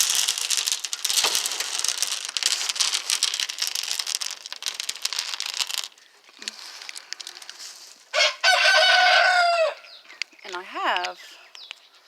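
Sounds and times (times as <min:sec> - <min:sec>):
dense crinkling and crackling: 0:00.0 - 0:09.2, 0:10.1 - 0:11.8.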